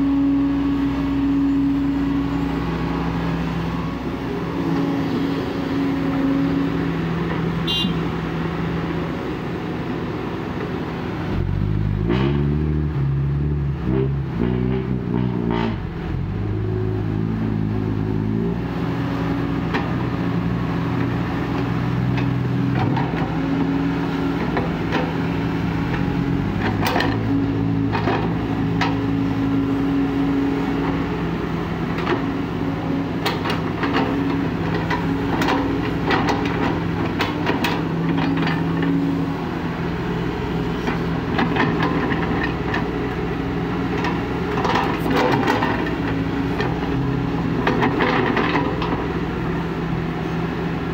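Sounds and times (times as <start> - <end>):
excavator diesel engine: 0.0 - 50.9
knocks and clanks: 44.0 - 47.0.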